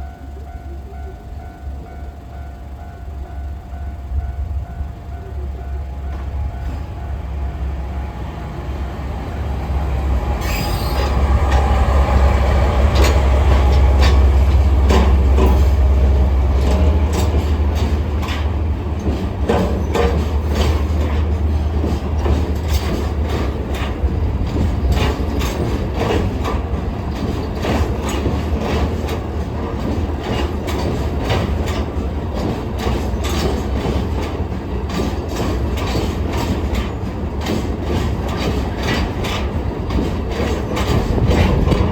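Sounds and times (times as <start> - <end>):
deep train engine rumble: 0.0 - 41.9
wheel clacks over rail joints: 10.4 - 41.9.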